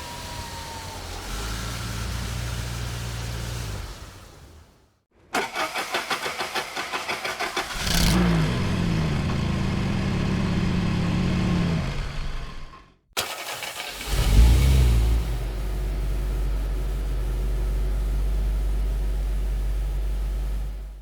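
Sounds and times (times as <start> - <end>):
car engine idling: 0.0 - 4.7, 5.4 - 21.0
starter motor cranking: 5.4 - 8.2, 13.2 - 14.6.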